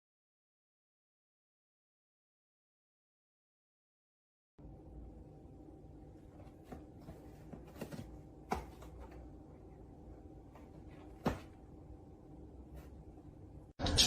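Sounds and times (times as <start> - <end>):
faint steady hum: 4.6 - 13.8.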